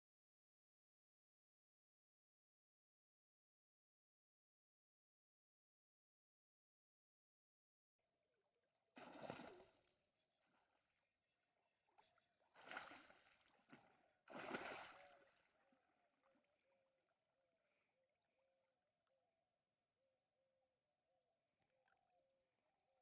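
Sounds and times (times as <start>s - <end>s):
splashes in water: 9.0s - 9.8s, 12.5s - 15.6s.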